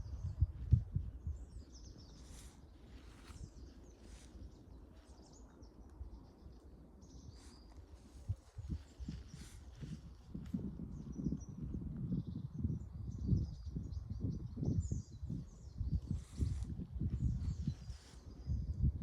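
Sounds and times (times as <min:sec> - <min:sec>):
steady low rumble: 0:00.0 - 0:07.0
small birds chirping: 0:00.0 - 0:19.0.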